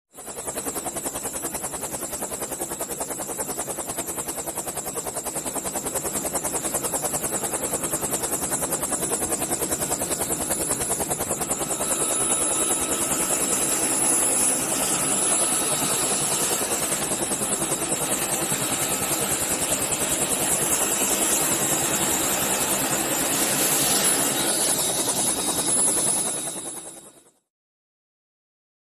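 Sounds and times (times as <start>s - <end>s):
helicopter rotor blades chopping: 0.2s - 27.2s
turbine whine: 8.6s - 27.0s.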